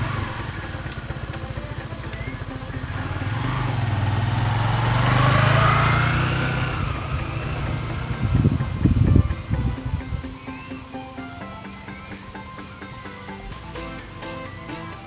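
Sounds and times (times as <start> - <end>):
vehicle engine passing by: 0.0 - 10.2.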